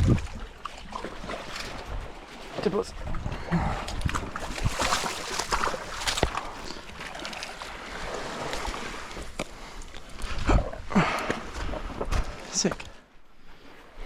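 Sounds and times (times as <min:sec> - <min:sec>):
wind on microphone: 0:00.0 - 0:00.5, 0:02.9 - 0:06.7, 0:10.1 - 0:12.5
sea water sloshing against rocks: 0:00.0 - 0:12.8.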